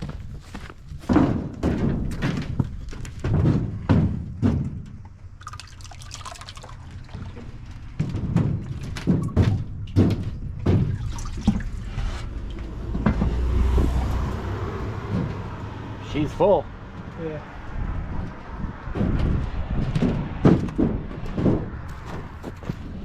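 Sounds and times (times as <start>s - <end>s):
dull thunks: 0.0s - 5.3s, 7.2s - 15.9s, 18.7s - 23.0s
liquid sloshing and pouring: 5.4s - 7.9s, 10.7s - 12.6s.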